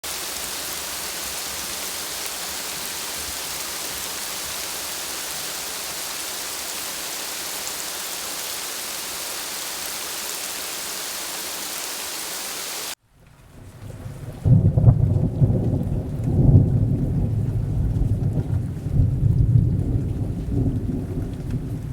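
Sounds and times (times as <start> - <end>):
rain falling: 0.0 - 21.9.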